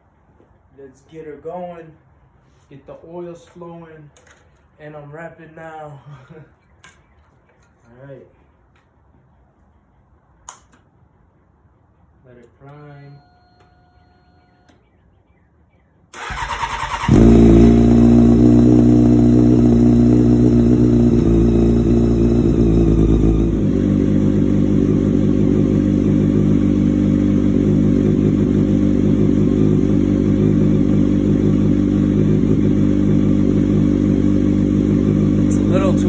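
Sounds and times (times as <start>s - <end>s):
motorcycle engine idling: 16.2s - 36.0s.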